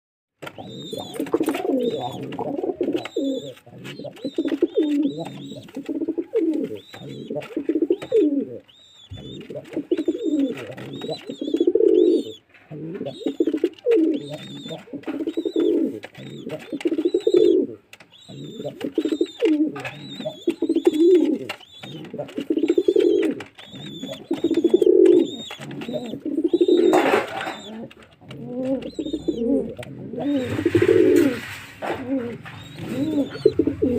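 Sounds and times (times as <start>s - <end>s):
pigeons cooing: 0.4s - 33.9s
high repeated chirping: 0.6s - 2.3s, 6.7s - 12.5s, 13.1s - 27.8s, 28.8s - 30.9s, 32.4s - 33.9s.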